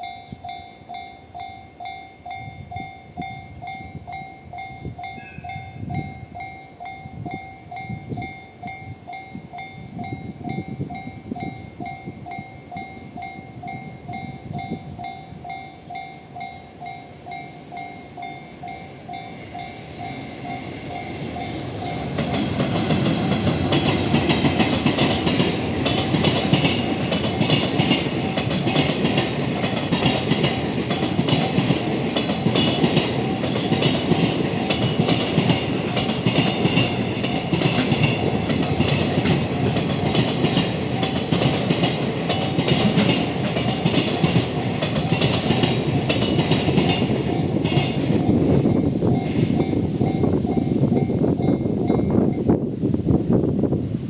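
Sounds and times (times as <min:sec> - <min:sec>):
level crossing warning bell: 0:00.0 - 0:52.6
freight train rumble: 0:00.0 - 0:54.0
train wheels clattering over rail joints: 0:19.4 - 0:52.5.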